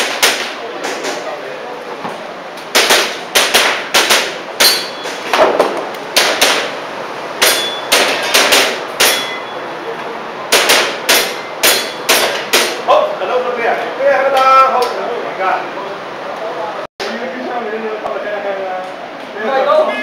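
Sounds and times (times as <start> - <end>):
airsoft pistol shots: 2.7 - 6.8, 10.5 - 12.8
pellets ringing on steel targets: 4.6 - 5.2, 7.4 - 8.4, 9.0 - 9.6, 11.1 - 12.2.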